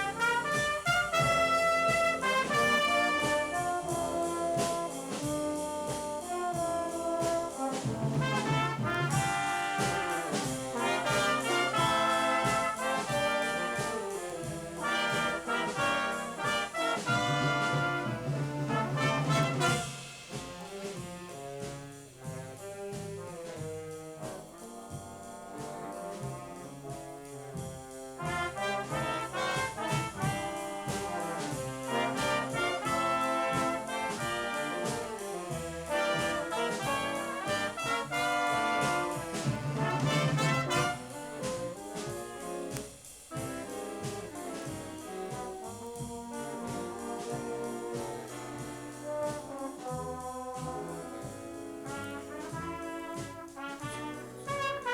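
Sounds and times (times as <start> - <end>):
big band jazz: 0.0 - 54.9
trombones and trumpets: 0.0 - 54.9.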